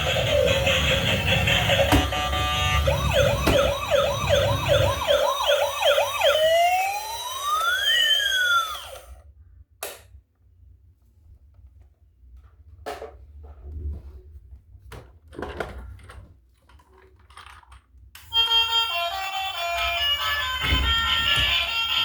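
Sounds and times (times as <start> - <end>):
background music: 0.0 - 4.7
electronic emergency siren: 0.0 - 9.2, 18.3 - 22.0.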